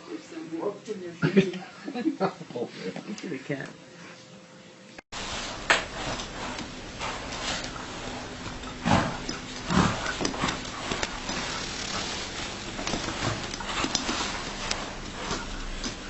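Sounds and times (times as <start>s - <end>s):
light clicks and scuffling: 5.7s - 16.0s.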